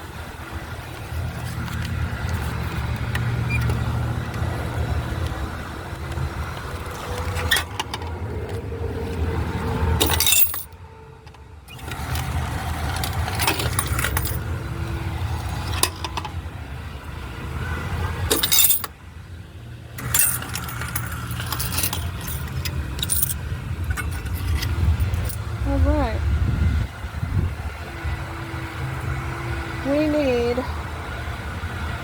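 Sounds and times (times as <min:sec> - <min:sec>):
car engine rumble: 0:00.0 - 0:32.0
handling clicks and rattles: 0:10.0 - 0:10.7, 0:11.7 - 0:14.5, 0:18.3 - 0:18.9, 0:20.0 - 0:25.4
keys jangling: 0:10.0 - 0:10.7, 0:13.0 - 0:14.4, 0:18.3 - 0:18.9, 0:20.0 - 0:25.4.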